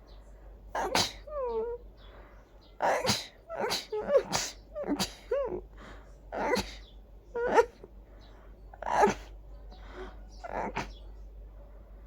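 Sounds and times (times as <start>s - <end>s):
catching breaths: 0.1s - 12.0s
person sneezing: 0.8s - 1.3s, 2.9s - 5.4s.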